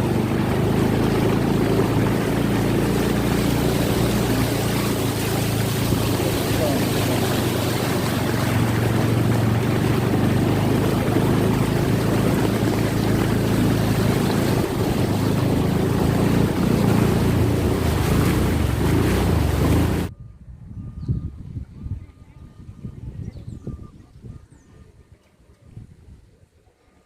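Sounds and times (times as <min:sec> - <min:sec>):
vehicle engine running: 0:00.0 - 0:20.1
wind rushing over microphone: 0:00.0 - 0:26.4.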